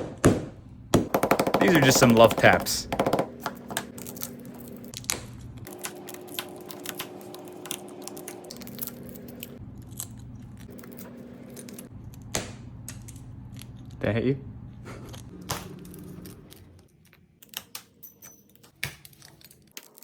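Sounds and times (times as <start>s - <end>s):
broken glass clicks and crunches: 16.9s - 20.0s.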